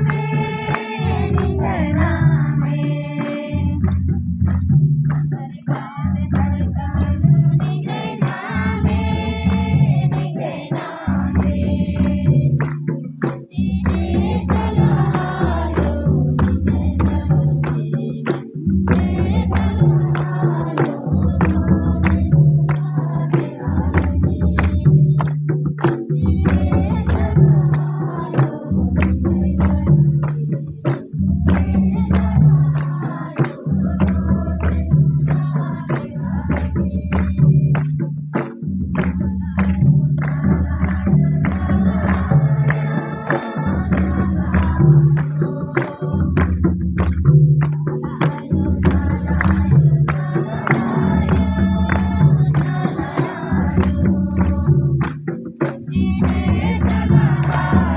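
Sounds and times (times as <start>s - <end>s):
voices singing: 0.0s - 38.0s, 39.0s - 46.8s, 47.6s - 57.9s
jingling percussion beat: 0.0s - 57.9s.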